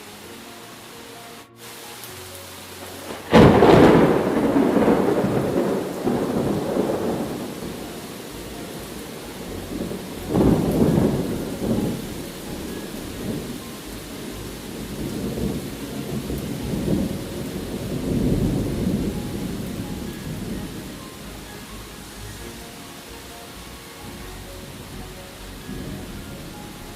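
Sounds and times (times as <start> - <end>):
steady rain: 0.0 - 26.9
thunder rumbling: 2.5 - 26.9.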